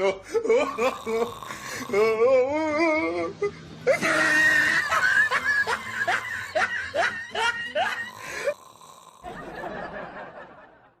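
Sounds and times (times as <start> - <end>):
person snickering: 3.9 - 10.6.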